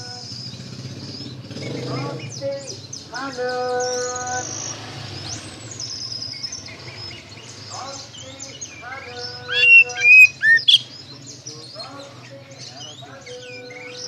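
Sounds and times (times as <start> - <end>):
bird singing whistles: 9.4 - 11.0.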